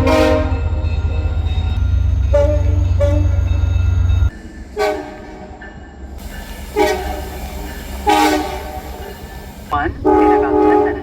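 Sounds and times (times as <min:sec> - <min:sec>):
train horn blasts: 0:00.0 - 0:00.9, 0:02.2 - 0:03.6, 0:04.8 - 0:05.5, 0:06.3 - 0:09.3, 0:09.9 - 0:11.0.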